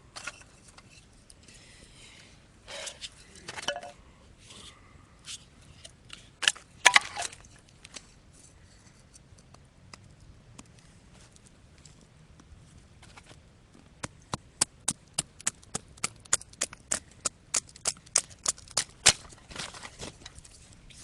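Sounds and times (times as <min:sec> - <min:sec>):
objects clicking and clinking: 0:03.5 - 0:04.0.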